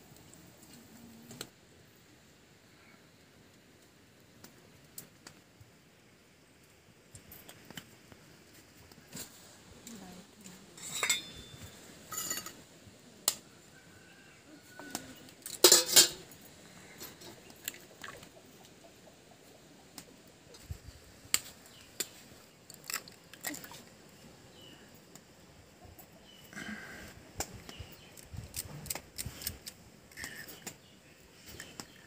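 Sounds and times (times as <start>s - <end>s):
utensils clinking on metal cookware: 10.8s - 12.6s, 15.4s - 16.3s.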